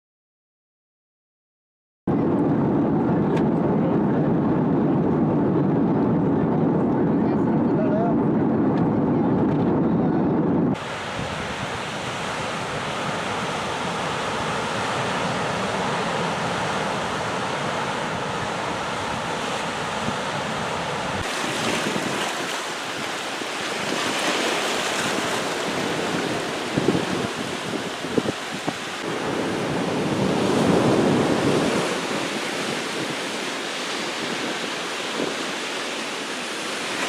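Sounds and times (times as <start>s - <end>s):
wind on microphone: 2.1s - 37.0s
ocean waves on a beach: 10.8s - 37.0s.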